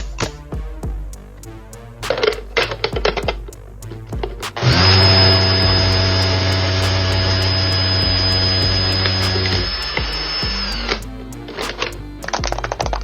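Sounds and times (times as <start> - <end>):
electric power tool whining: 4.6 - 11.0.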